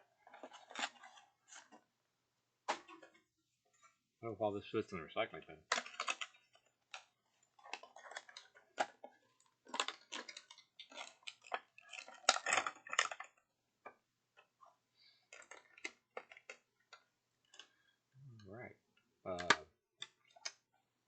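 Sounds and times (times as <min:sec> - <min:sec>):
plastic packaging clicks and crinkles: 0:00.0 - 0:01.9, 0:05.6 - 0:18.0, 0:19.3 - 0:21.0.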